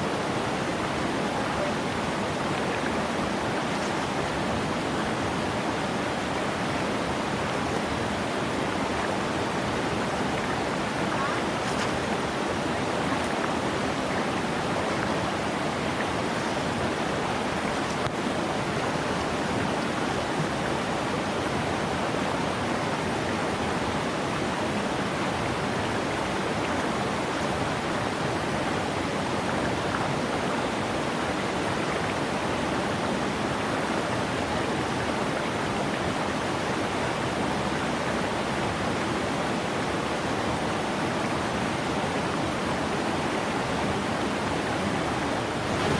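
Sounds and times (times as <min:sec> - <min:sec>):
stream rushing over rocks: 0:00.0 - 0:45.9.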